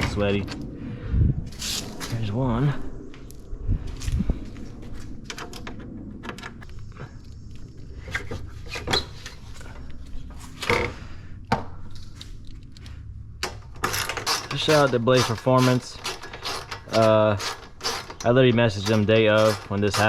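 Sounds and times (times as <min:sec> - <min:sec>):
low steady hum: 0:00.0 - 0:19.9
tools clicking and knocking: 0:13.4 - 0:20.0.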